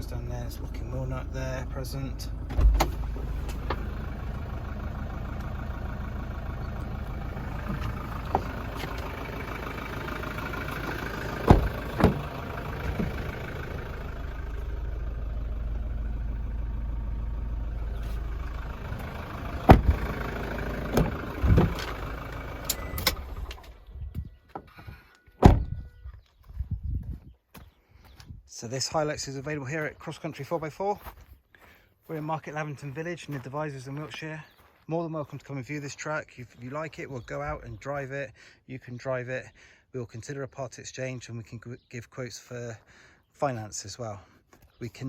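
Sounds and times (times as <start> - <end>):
diesel engine idling: 0.0 - 24.4
clicks and knocks in cabin: 20.9 - 22.0.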